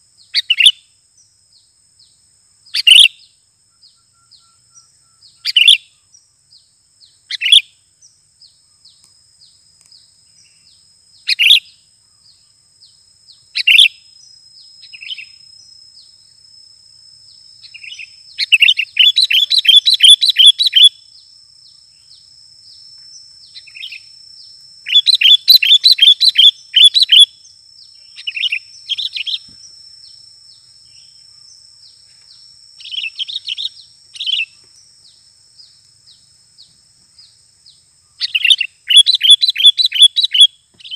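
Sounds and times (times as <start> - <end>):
bird chirps: 0.0 - 40.9
bird rapid chattering: 17.8 - 20.9, 24.9 - 27.3.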